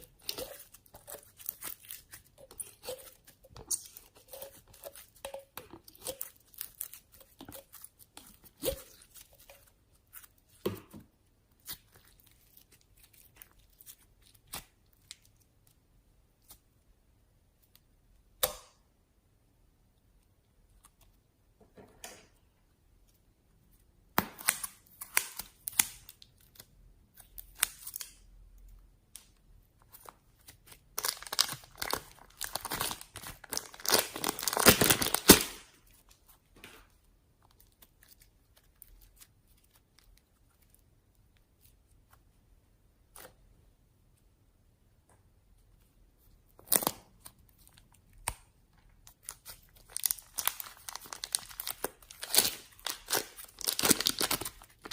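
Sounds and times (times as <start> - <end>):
slime squishing and tearing: 0.0 - 10.7, 29.8 - 36.1, 46.6 - 54.9.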